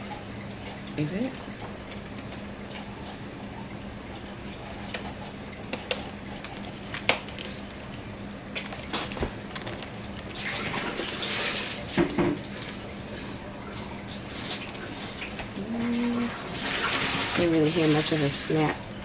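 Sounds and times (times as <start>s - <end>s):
plastic rubbing and scraping: 8.6s - 10.4s.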